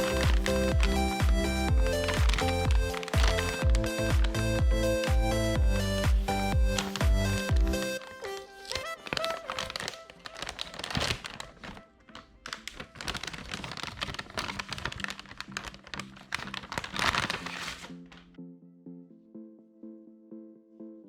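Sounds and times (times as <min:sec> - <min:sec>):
packaging rustling and crinkling: 0:00.0 - 0:04.8, 0:06.7 - 0:18.3
electronic music: 0:00.0 - 0:08.7.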